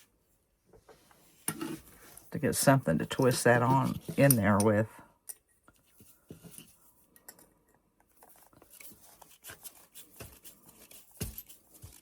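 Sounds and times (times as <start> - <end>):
small clicks and scrapes: 3.1 - 12.0.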